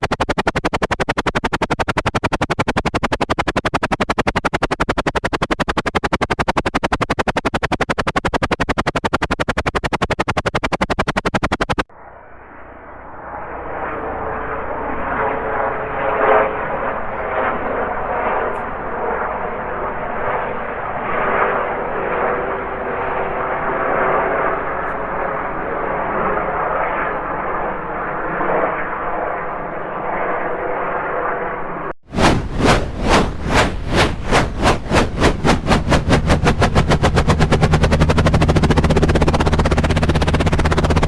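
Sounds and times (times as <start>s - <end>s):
airplane engine drone: 8.1s - 25.1s, 29.4s - 41.0s.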